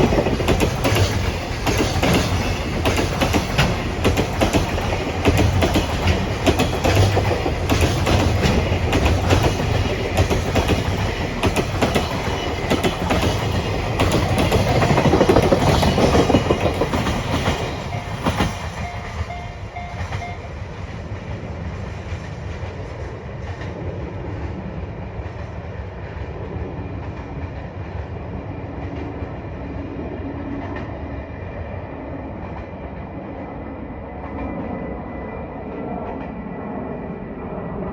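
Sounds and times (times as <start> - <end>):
train wheels clattering over rail joints: 0.0 - 20.2
steady train rumble: 0.0 - 37.9.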